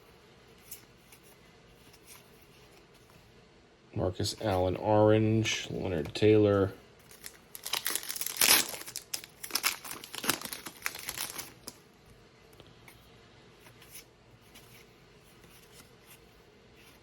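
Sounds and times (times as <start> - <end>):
faint handling noise: 0.0 - 3.4, 4.2 - 17.0
plastic wrapper tearing and crinkling: 7.0 - 11.8.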